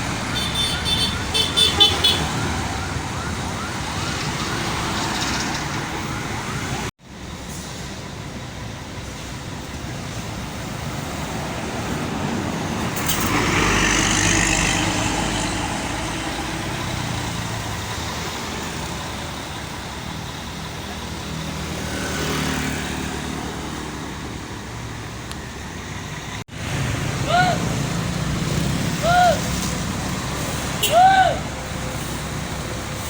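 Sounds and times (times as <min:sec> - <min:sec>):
passing traffic: 0:00.0 - 0:33.0
vehicle passing close: 0:11.2 - 0:18.5.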